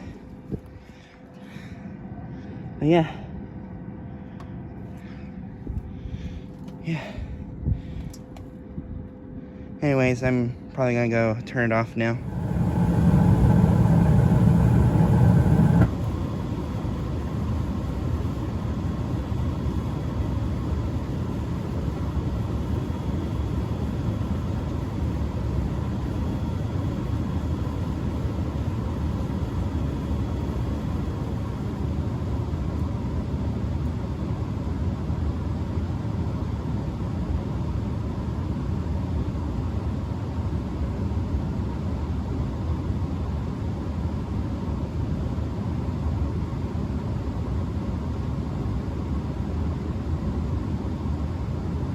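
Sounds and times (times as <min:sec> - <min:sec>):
furnace blower rumbling: 0:00.0 - 0:33.9
loud multi-tone hum: 0:00.0 - 0:34.6.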